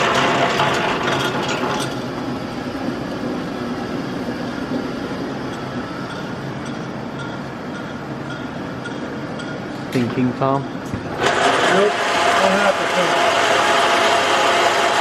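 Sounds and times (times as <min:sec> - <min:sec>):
machine tool humming: 0:11.1 - 0:15.0.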